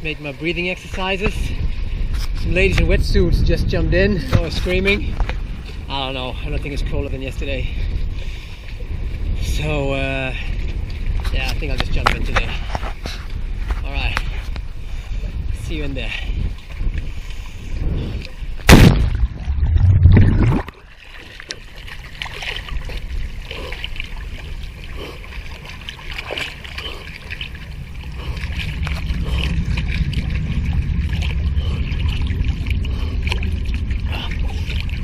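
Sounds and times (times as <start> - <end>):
churning water: 0.0 - 35.0
sea water sloshing and lapping: 0.0 - 35.0
splash into water: 18.6 - 23.8, 25.0 - 27.6.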